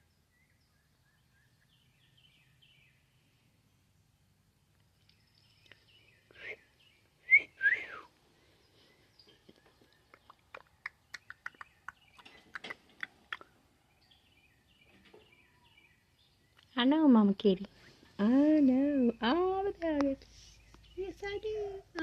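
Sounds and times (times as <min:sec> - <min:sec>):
faint bird chirps: 0:04.8 - 0:18.0, 0:18.6 - 0:22.0.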